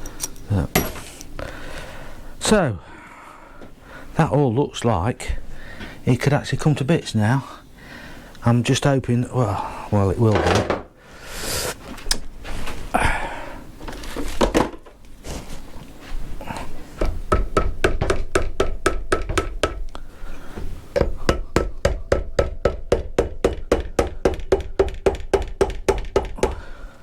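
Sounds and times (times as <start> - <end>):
loose knocks: 10.3 - 10.9, 17.0 - 19.8
hammer tapping on metal: 17.0 - 19.9, 21.0 - 26.7.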